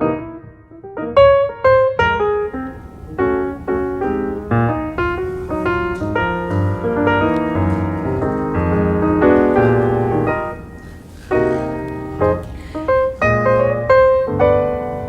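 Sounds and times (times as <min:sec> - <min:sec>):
piano music: 0:00.0 - 0:15.0.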